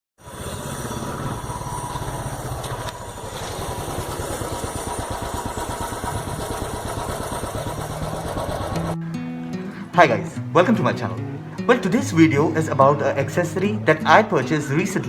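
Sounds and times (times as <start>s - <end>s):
motorcycle engine running at low revs: 0.2s - 9.0s.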